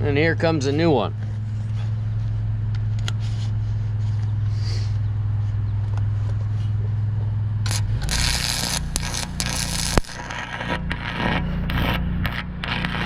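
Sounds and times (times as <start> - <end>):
arc welder humming: 7.6 - 13.0
welding arc crackling sizzle: 7.6 - 13.0.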